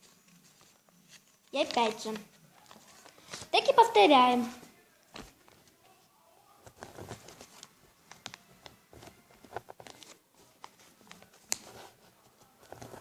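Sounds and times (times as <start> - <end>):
paper being folded: 0.0 - 3.8, 9.0 - 13.0.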